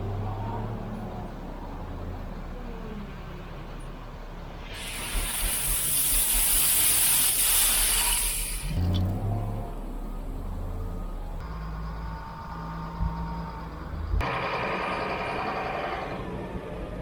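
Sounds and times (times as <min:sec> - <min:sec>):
loud even hiss: 0:04.6 - 0:08.9
vehicle engine running: 0:08.6 - 0:17.0.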